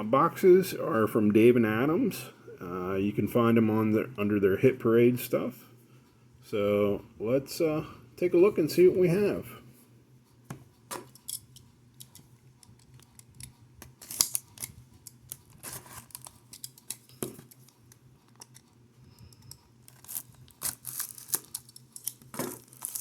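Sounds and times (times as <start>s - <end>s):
packaging being handled: 12.6s - 18.7s, 19.4s - 23.0s.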